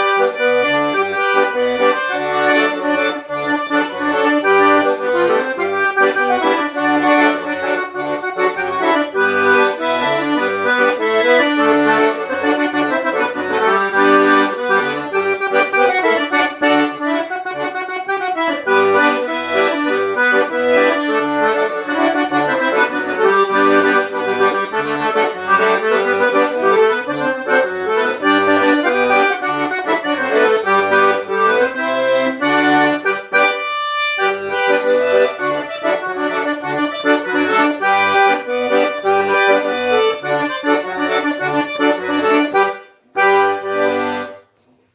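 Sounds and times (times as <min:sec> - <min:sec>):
quick instrumental melody with bass: 0:00.0 - 0:44.3.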